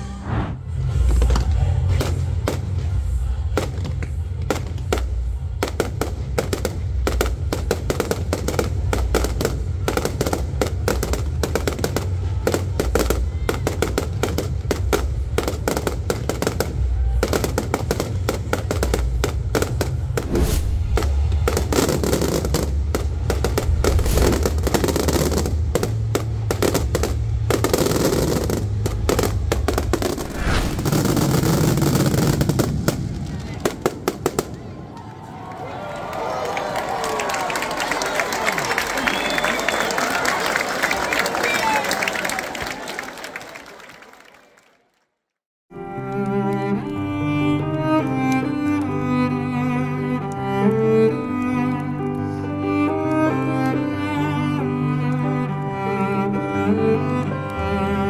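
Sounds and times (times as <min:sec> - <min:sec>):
fireworks bangs and crackles: 0:00.0 - 0:35.4.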